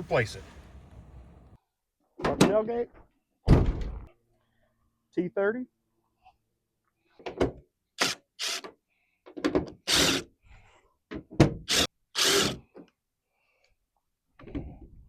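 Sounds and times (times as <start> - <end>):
power tool bursts on screws: 11.7 - 12.6.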